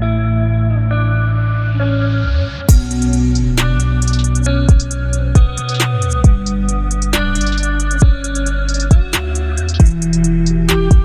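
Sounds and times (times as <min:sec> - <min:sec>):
electronic music: 0:01.5 - 0:11.0
rising whoosh: 0:01.7 - 0:08.8
heavy bass drum hit: 0:02.7 - 0:11.0
hi-hat ticks: 0:02.7 - 0:11.0.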